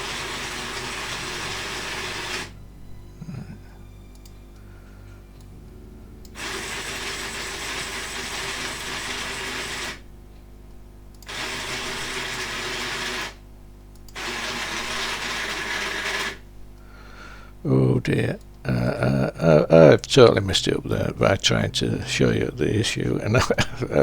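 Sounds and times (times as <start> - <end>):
geared motor whining: 0.0 - 2.6, 3.2 - 10.1, 11.2 - 13.4, 14.1 - 16.5.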